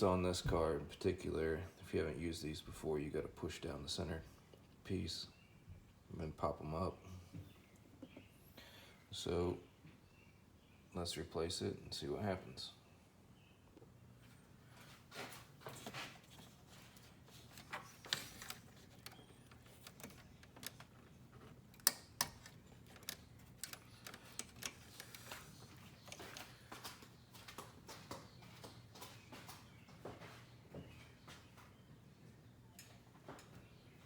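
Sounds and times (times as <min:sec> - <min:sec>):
clicks and knocks on plastic trim: 0:17.5 - 0:26.9.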